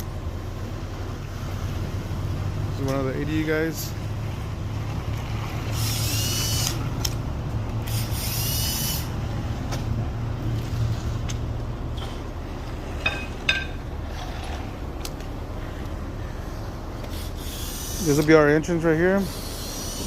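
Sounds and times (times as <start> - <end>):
vehicle engine rumbling: 0.0 - 20.0
hissing bursts with whine: 5.8 - 6.9, 7.8 - 9.2, 17.1 - 18.4, 19.2 - 20.0.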